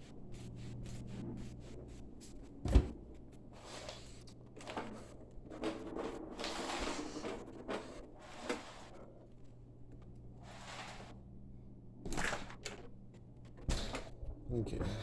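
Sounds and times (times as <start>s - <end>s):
rustling and scraping: 0.1s - 11.3s.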